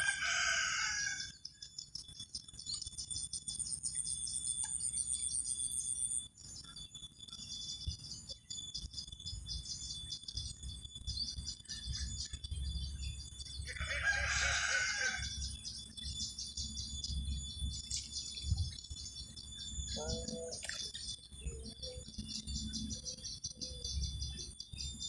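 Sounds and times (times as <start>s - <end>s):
rooster crowing: 0.0s - 1.3s, 13.7s - 15.5s
insects chirring: 0.0s - 25.0s.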